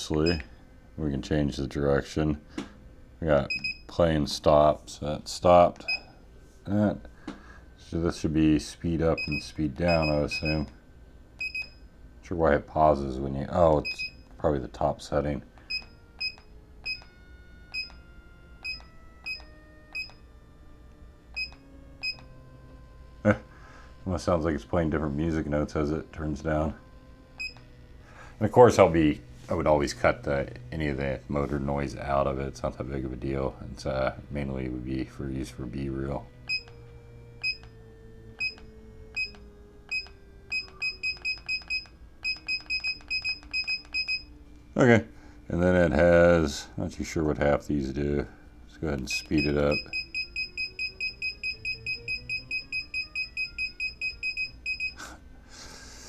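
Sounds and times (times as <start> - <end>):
motor whine: 0.0 - 55.8
turntable motor whine: 14.8 - 42.3.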